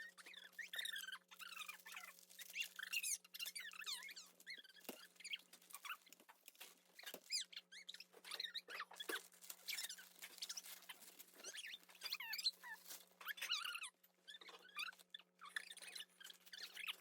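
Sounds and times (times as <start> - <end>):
packaging crinkling and tearing: 1.4 - 7.4, 8.9 - 11.8.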